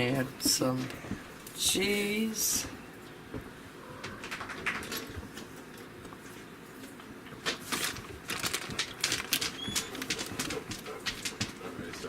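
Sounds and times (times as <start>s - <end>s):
shredded cheese rustling: 7.5s - 10.6s.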